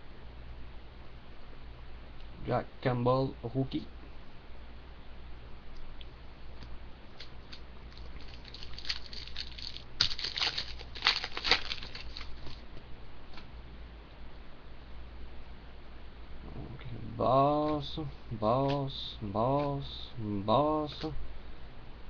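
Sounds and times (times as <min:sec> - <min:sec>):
steady low hum: 0:00.0 - 0:22.0
trading cards flipping: 0:07.2 - 0:12.6.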